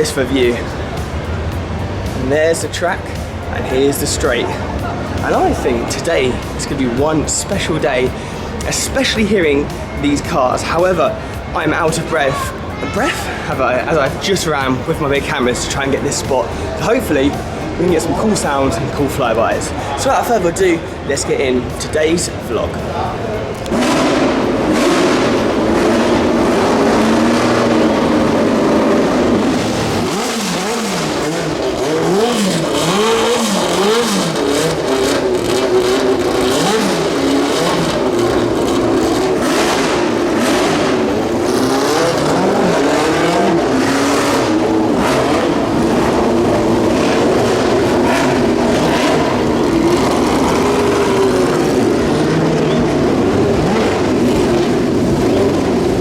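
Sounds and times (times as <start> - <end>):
race car engines at high revs: 0.0 - 56.0.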